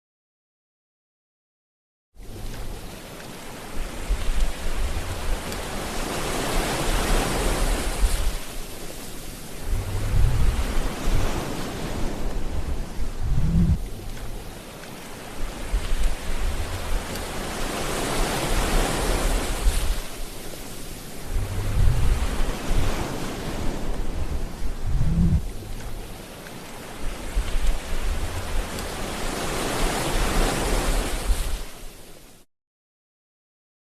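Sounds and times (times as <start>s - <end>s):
sea waves washing in: 2.2s - 32.4s
low rumbling: 9.5s - 14.6s, 15.4s - 17.6s, 21.1s - 26.3s, 27.2s - 29.0s.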